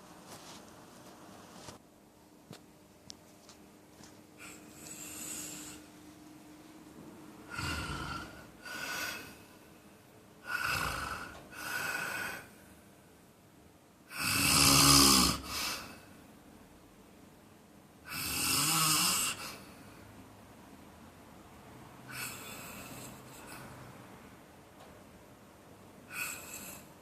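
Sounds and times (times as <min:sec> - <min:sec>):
man snoring: 0:04.4 - 0:05.8, 0:07.5 - 0:09.4, 0:10.4 - 0:12.5, 0:14.1 - 0:15.9, 0:18.1 - 0:19.6, 0:26.1 - 0:26.9.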